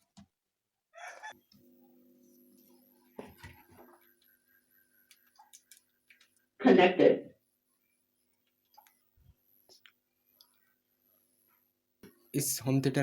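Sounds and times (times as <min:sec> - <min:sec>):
faint steady hum: 0:01.2 - 0:13.0
faint clicks and handling noises: 0:05.0 - 0:06.5, 0:08.2 - 0:10.7.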